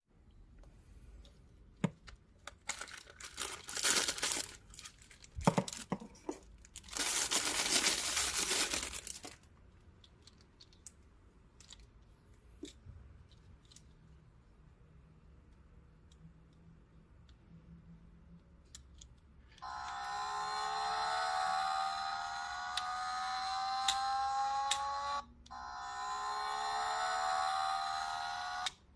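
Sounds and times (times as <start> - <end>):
packaging tearing and crinkling: 2.6 - 5.9, 6.6 - 9.5.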